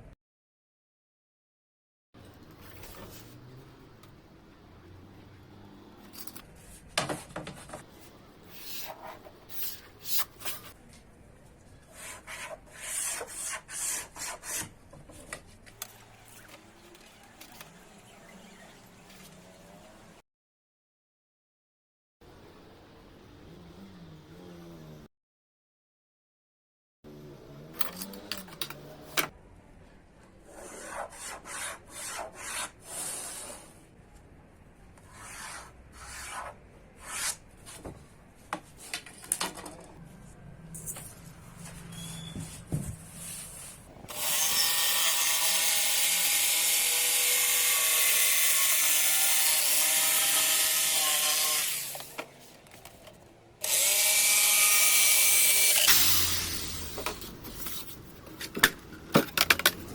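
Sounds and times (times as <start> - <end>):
power tool running: 53.6 - 57.0.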